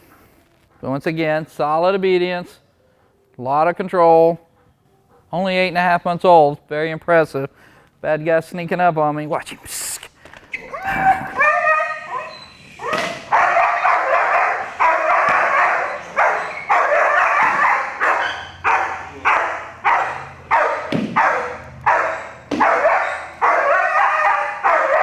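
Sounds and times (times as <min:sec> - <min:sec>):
dog barking: 0:10.8 - 0:25.0.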